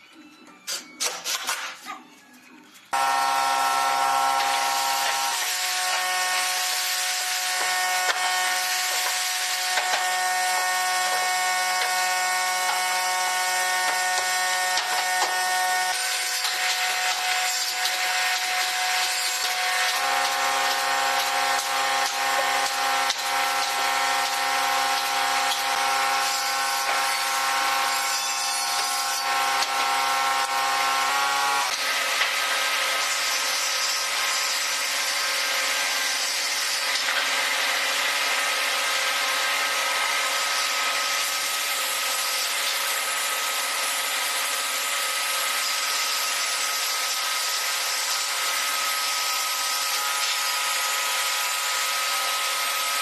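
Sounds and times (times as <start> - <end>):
woodworking power tool motor whine: 2.9 - 33.3.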